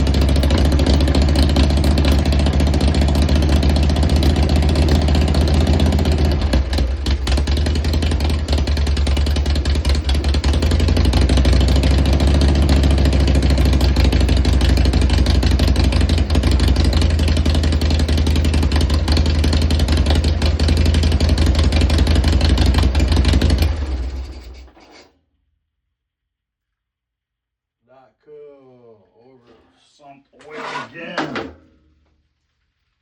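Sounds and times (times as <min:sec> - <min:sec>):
motorcycle engine running: 0:00.0 - 0:24.7.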